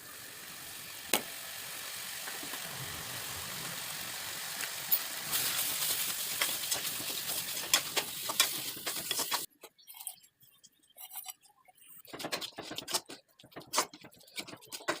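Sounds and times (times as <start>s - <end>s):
chicken sizzling in hot oil: 0.0s - 9.5s
oil popping and crackling: 0.9s - 9.9s.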